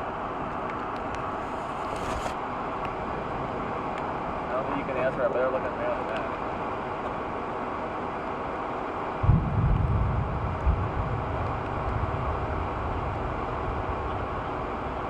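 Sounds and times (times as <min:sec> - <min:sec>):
low rumble: 0:09.2 - 0:15.0
wind noise: 0:09.2 - 0:15.0.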